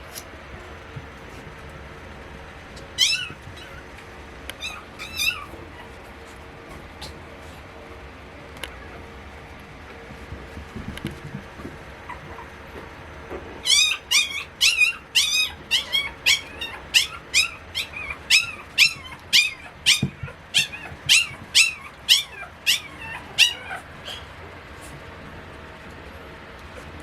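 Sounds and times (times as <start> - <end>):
puppy yipping: 2.8 - 3.9, 4.6 - 6.0, 12.1 - 12.6, 13.6 - 24.3.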